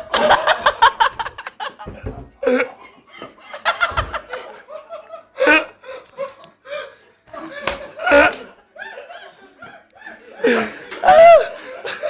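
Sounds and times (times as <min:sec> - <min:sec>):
men laughing and snickering: 0:00.0 - 0:12.0.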